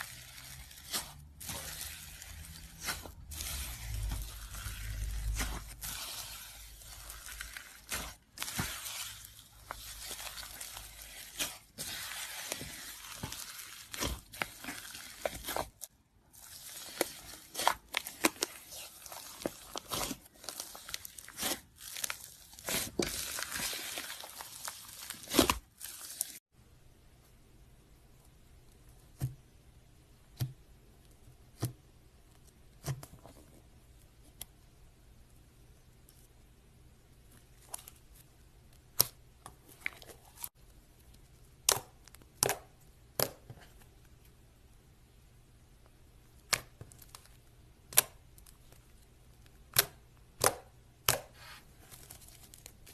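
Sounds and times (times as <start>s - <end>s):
slime squished by hand: 0.0s - 26.4s.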